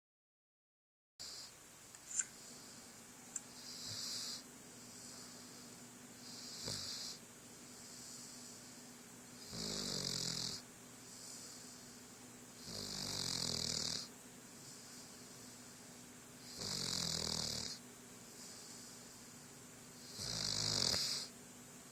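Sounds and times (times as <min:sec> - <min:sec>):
snoring with buzzing rattle: 0:01.2 - 0:01.6, 0:03.5 - 0:21.4.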